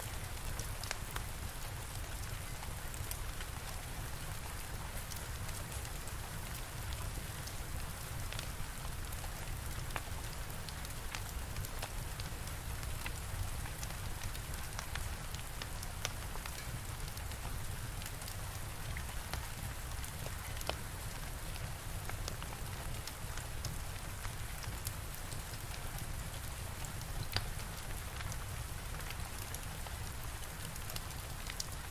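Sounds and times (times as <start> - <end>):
steady rain falling: 0.0 - 31.9
fire crackling: 8.2 - 31.9.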